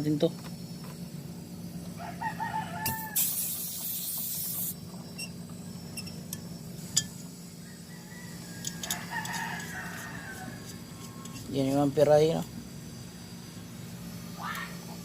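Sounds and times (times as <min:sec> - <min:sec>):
refrigerator humming: 0:00.0 - 0:15.0
rooster crowing: 0:01.9 - 0:03.3, 0:07.5 - 0:11.4
gas hissing: 0:02.7 - 0:07.6, 0:08.3 - 0:15.0.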